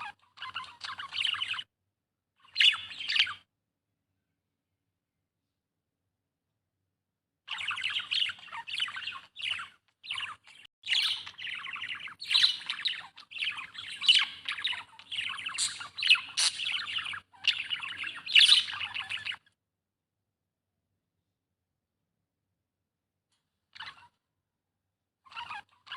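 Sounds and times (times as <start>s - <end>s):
budgerigars warbling and chattering: 0.0s - 1.7s, 2.4s - 3.4s, 7.5s - 19.5s, 23.8s - 24.2s, 25.3s - 25.9s.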